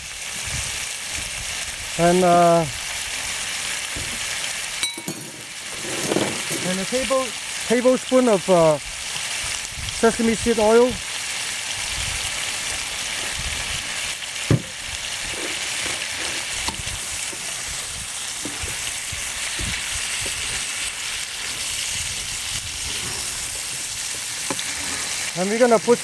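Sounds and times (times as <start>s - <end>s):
food sizzling in hot oil: 0.0s - 26.0s
utensil stirring and knocking pan: 4.8s - 7.1s, 14.5s - 17.6s, 18.4s - 18.8s, 22.8s - 25.3s.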